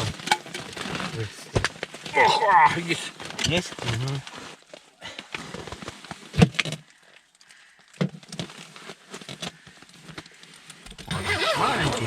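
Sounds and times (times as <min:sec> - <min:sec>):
gear clicks and knocks: 0:10.8 - 0:12.0
person speaking: 0:10.9 - 0:12.0.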